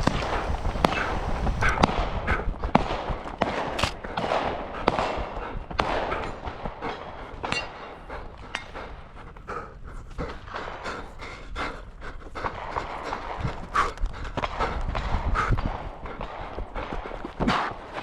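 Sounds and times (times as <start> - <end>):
rapid footfalls: 0.0 - 1.7.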